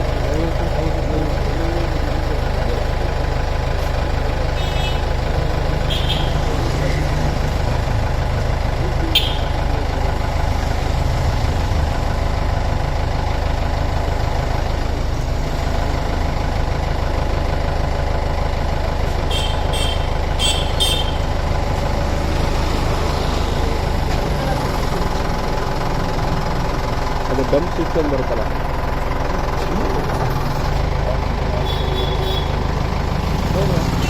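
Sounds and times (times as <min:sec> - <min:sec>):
diesel engine running: 0:00.0 - 0:34.0.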